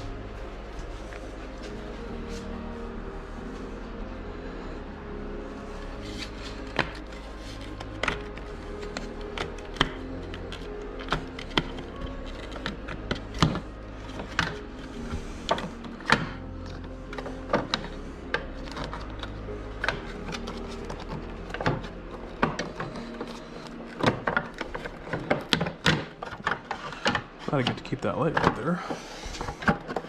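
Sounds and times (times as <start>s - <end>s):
steady low hum: 0.0s - 25.5s.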